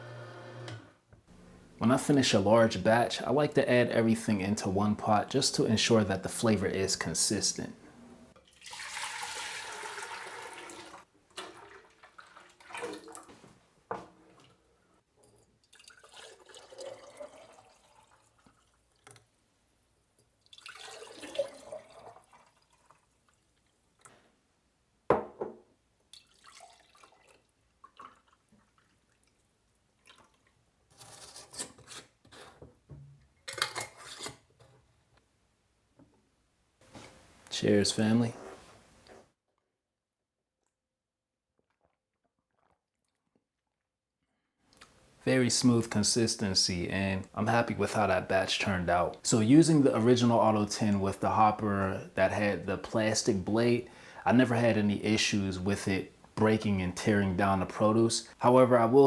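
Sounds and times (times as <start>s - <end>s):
juice pouring and gurgling: 8.4s - 13.4s, 15.3s - 19.1s, 20.4s - 24.0s, 26.2s - 30.6s, 41.6s - 43.8s.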